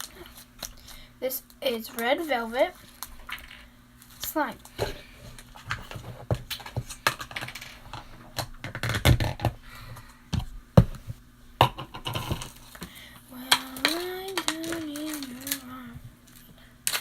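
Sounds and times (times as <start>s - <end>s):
person humming: 13.3s - 16.1s.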